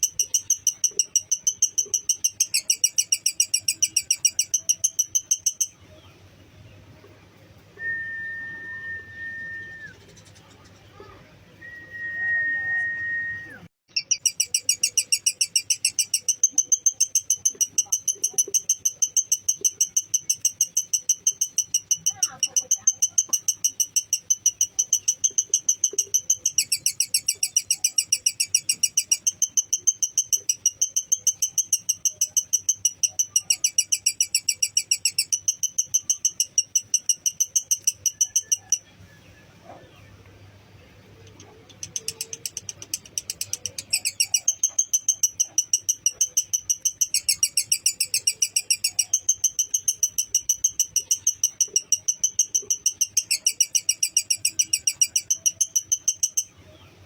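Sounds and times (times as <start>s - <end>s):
lovebird chirping chatter: 0.0s - 7.6s, 9.3s - 57.0s.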